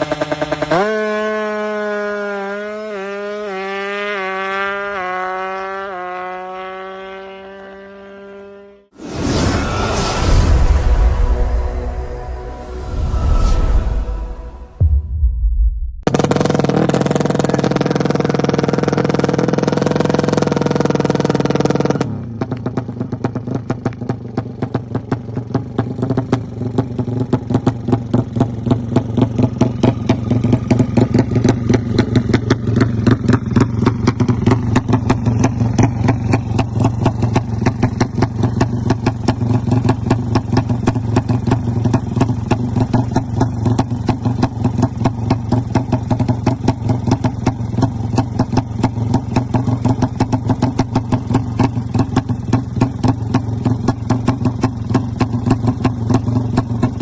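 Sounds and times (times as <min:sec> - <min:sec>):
motorcycle engine fast idle: 0:22.3 - 0:57.0.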